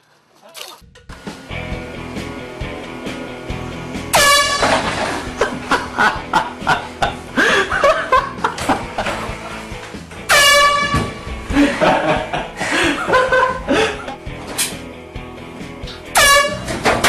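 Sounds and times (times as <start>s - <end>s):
air horn blasts: 4.1s - 5.0s, 10.3s - 11.3s, 16.1s - 17.0s.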